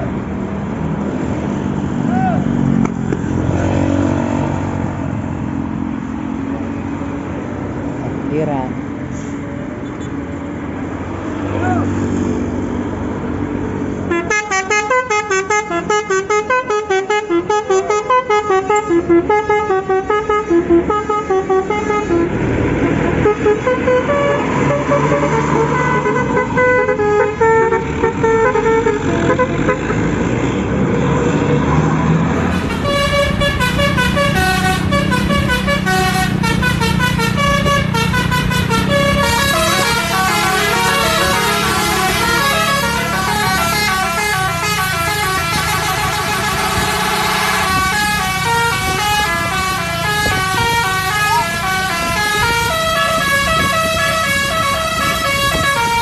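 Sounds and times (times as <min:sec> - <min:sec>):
bus musical horn melodies: 0:14.0 - 0:30.6, 0:32.2 - 0:56.0.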